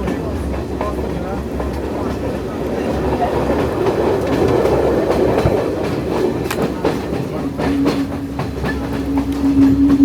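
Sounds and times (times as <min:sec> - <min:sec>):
train rumbling on track: 0:00.0 - 0:10.0
wheels clicking over rail joints: 0:00.0 - 0:10.0
steady tone: 0:07.4 - 0:10.0.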